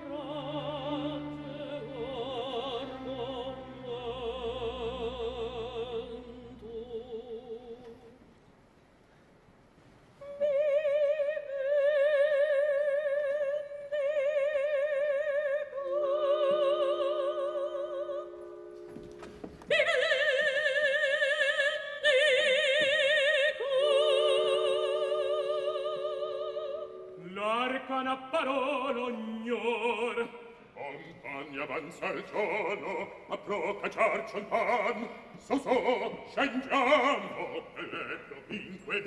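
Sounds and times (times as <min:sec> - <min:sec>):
sustained orchestral chords: 0:00.0 - 0:07.3
woman singing opera: 0:00.0 - 0:08.2, 0:10.2 - 0:18.8, 0:19.6 - 0:39.0.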